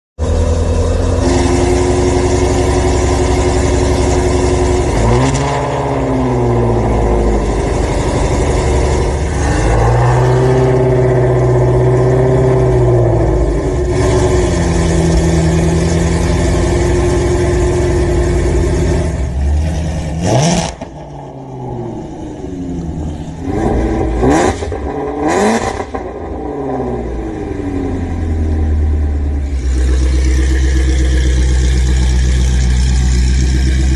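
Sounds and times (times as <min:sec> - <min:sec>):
car engine revving: 0:00.2 - 0:33.9.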